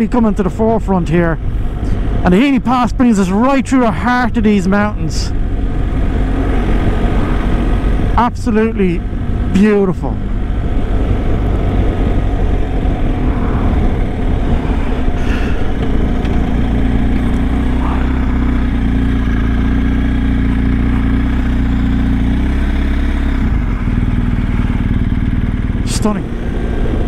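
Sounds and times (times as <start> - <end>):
motorcycle engine cruising: 0.0 - 27.0
wind noise on microphone: 10.5 - 17.5.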